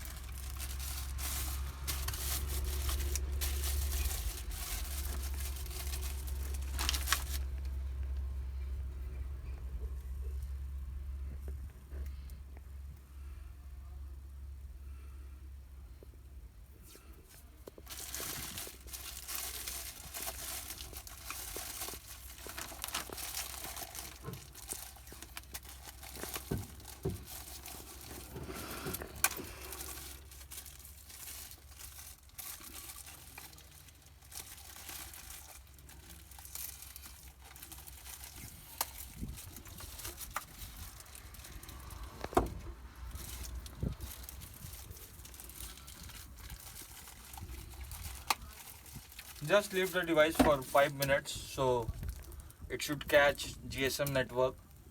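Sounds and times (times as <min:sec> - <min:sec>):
plastic wrapping crinkling: 0:00.0 - 0:08.4, 0:17.3 - 0:53.4
steady low hum: 0:00.0 - 0:31.2.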